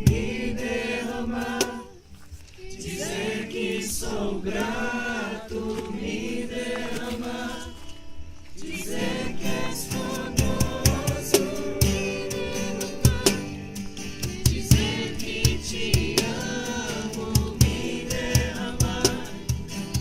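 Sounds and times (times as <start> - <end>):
guitar: 0.0 - 4.3, 5.5 - 20.0
group singing worship song: 0.0 - 20.0
steady drum beat: 9.9 - 20.0.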